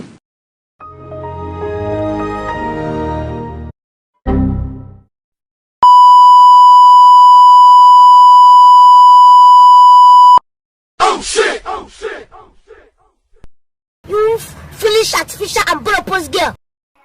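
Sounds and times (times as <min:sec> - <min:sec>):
censor bleep tone: 0:05.8 - 0:10.4.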